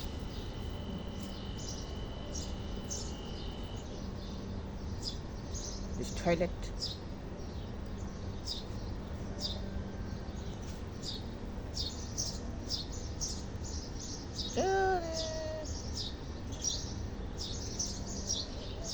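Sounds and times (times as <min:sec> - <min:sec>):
birds chirping: 0:00.0 - 0:18.9
kitten meowing: 0:14.6 - 0:15.7.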